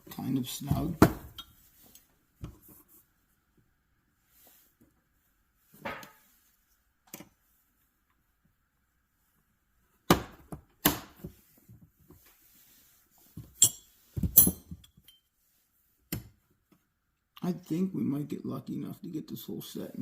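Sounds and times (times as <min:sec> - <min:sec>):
metal wrenches clinking: 0:13.5 - 0:15.2.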